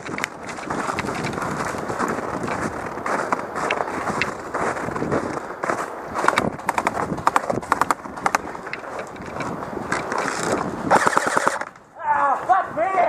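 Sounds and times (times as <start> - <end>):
footsteps: 0.0 - 10.9
gear rattling: 6.2 - 11.7
airsoft gun shots: 10.9 - 11.7.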